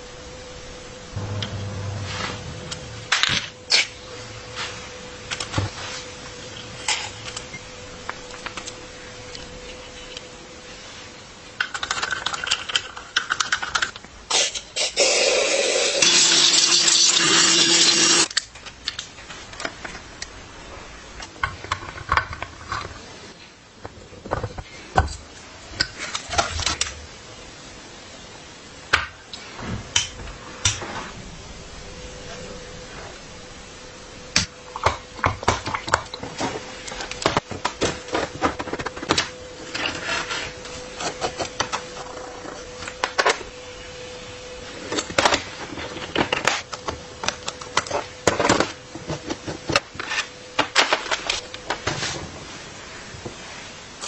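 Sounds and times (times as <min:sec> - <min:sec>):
loud hissing: 0:01.0 - 0:04.4.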